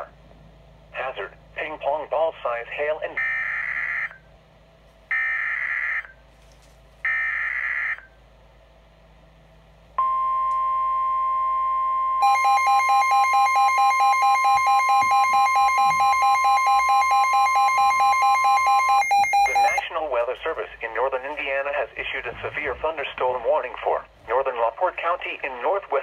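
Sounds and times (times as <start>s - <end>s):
weather radio alarm beeping rapidly: 3.1s - 4.2s, 10.0s - 19.9s
steady warning alert tone: 10.0s - 19.9s.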